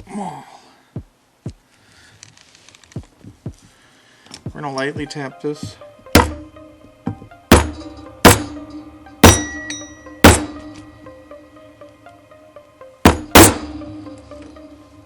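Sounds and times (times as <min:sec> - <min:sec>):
hammer striking rivet tool: 0:06.2 - 0:06.5, 0:07.5 - 0:10.8, 0:13.1 - 0:13.9.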